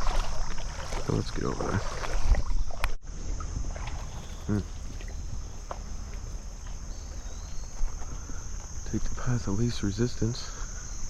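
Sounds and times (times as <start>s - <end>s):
insect chorus buzzing: 0.0s - 11.0s
low outdoor rumble: 2.9s - 10.9s
short vocal sound: 4.4s - 4.9s.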